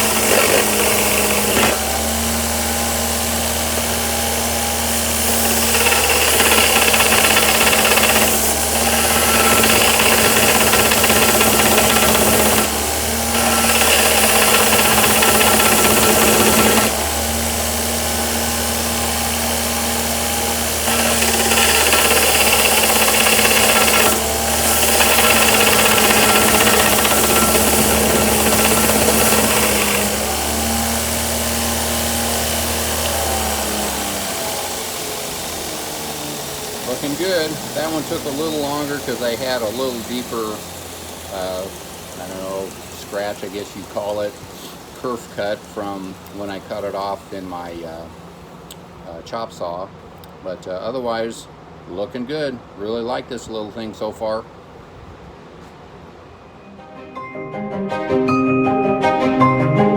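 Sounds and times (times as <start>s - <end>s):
hissing grinding: 0.0s - 18.8s, 20.3s - 31.0s
grinder motor hum: 0.0s - 48.1s.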